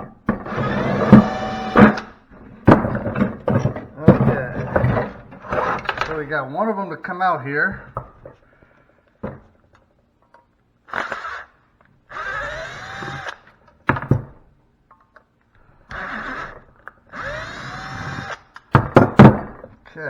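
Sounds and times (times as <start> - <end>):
clicks and knocks of hard parts: 0.0 - 6.2, 18.5 - 19.8
cordless drill motor whining: 0.4 - 2.2, 10.9 - 13.6, 15.9 - 18.6.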